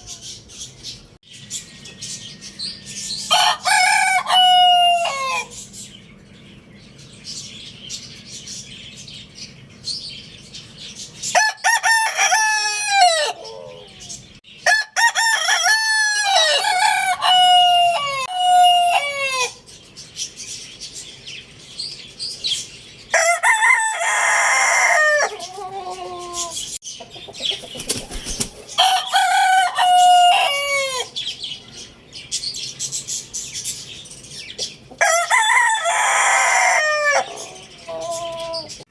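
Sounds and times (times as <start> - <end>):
roosters crowing: 1.8 - 5.7, 11.2 - 19.7, 23.0 - 26.8, 27.7 - 31.5, 34.8 - 38.8.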